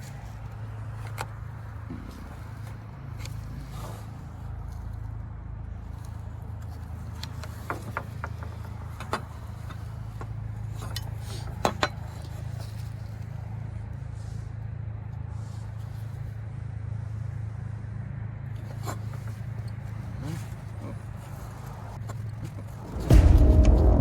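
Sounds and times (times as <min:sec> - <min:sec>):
steady low hum: 0:22.6 - 0:24.0.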